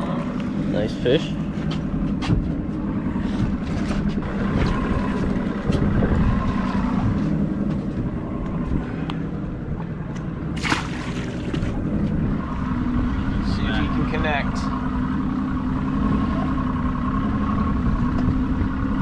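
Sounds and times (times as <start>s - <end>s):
motorboat engine running: 0.0s - 19.0s
wind on microphone: 3.4s - 10.1s
water sounds: 6.3s - 13.3s.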